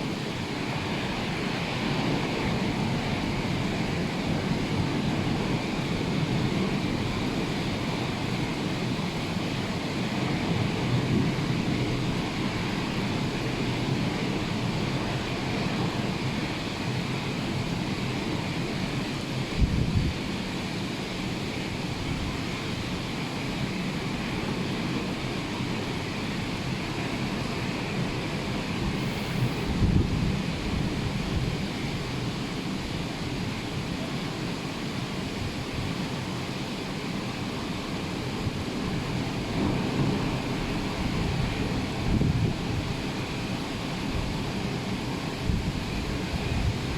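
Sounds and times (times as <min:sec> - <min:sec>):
wind buffeting microphone: 0:28.7 - 0:32.1, 0:38.3 - 0:43.4, 0:44.0 - 0:46.9.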